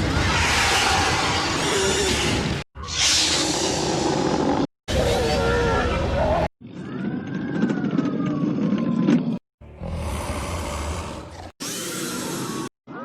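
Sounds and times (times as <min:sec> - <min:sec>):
harsh hissing blast: 0:02.8 - 0:04.3.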